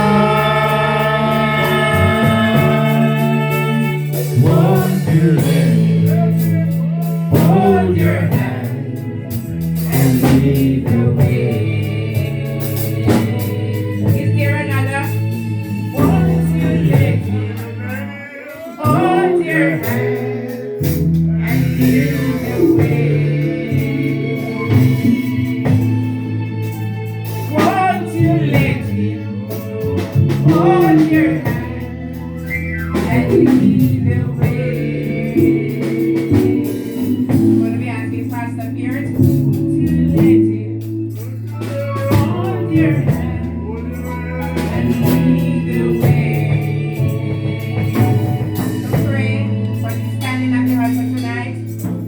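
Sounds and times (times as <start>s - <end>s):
man singing: 0.0s - 12.5s, 15.9s - 25.6s, 27.5s - 36.3s, 37.4s - 47.3s
drum hits: 0.0s - 17.7s, 18.9s - 43.5s
sustained bass notes: 0.0s - 52.0s.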